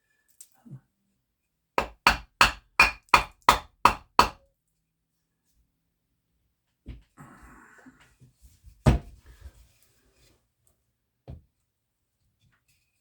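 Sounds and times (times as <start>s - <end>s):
sharp knocks on wood block: 1.8s - 4.4s.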